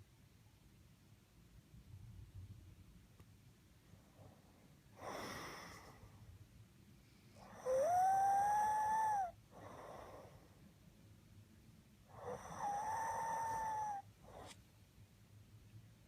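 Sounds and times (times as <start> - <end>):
soft rasping breath: 4.0 - 6.4, 7.0 - 10.8, 12.1 - 14.6
person snoring with whistling tone: 7.4 - 10.2, 12.1 - 14.5.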